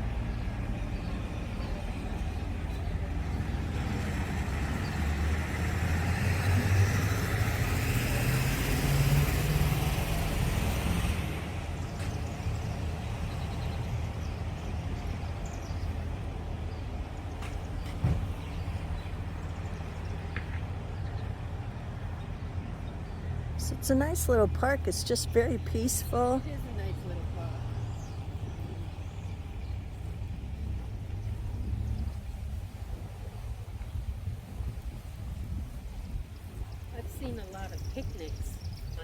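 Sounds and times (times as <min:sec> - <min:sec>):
vehicle driving past: 0:00.0 - 0:37.8
steady low rumble: 0:11.1 - 0:39.0.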